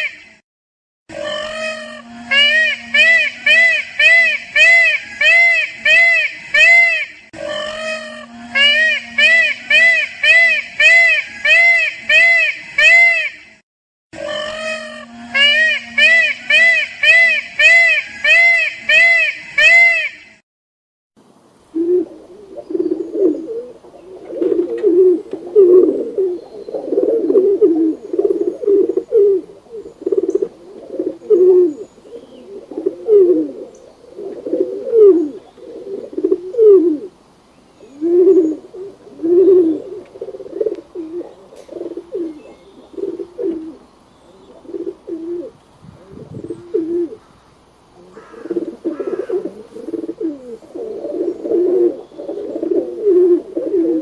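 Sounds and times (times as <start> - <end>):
pigeons cooing: 7.4 - 12.6, 21.7 - 37.2, 37.8 - 47.3, 48.0 - 54.0.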